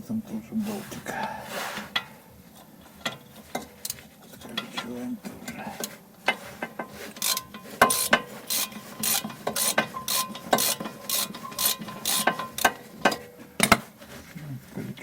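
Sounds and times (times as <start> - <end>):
ratchet wrench clicking: 7.2 - 12.7.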